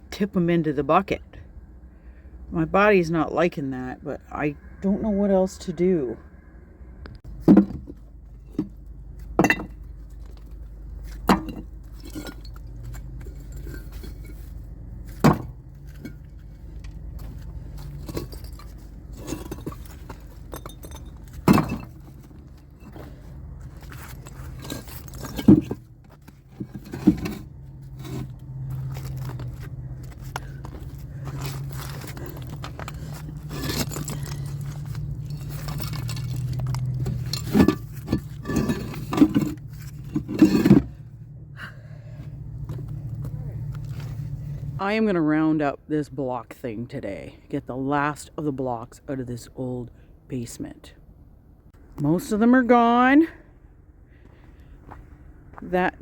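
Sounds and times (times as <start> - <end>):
concrete blocks knocking and clinking: 7.3 - 14.4, 15.1 - 16.5, 17.2 - 29.4, 30.1 - 41.0.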